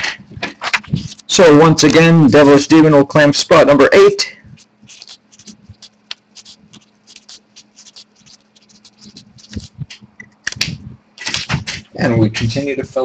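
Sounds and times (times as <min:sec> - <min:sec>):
faint steady hum: 0:00.0 - 0:13.0
pen scratching on paper: 0:04.6 - 0:10.0.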